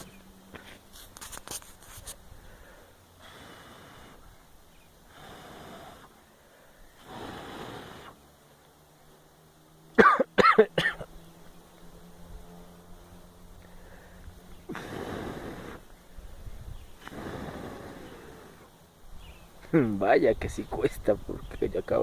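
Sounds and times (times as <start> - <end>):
person blowing on a fire: 2.0 - 4.4, 5.0 - 8.2, 13.7 - 18.7
person coughing: 10.0 - 11.1.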